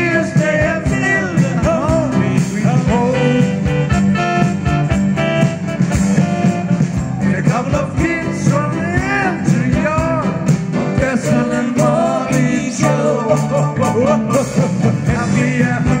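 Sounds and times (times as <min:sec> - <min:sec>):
band music with sliding melody: 0:00.0 - 0:16.0.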